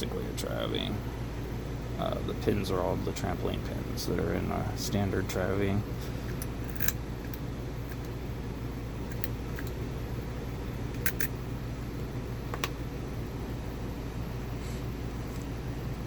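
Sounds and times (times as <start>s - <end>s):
steady low hum: 0.0s - 16.0s
lock picks clicking on lock: 6.3s - 8.1s, 9.1s - 9.7s, 11.0s - 11.3s.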